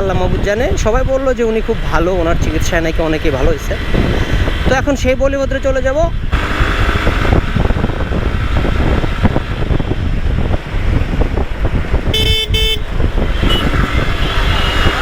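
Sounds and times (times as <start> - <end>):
motorcycle road noise: 0.0 - 15.0
wind buffeting microphone: 0.0 - 15.0
vehicle horn toots: 12.1 - 15.0.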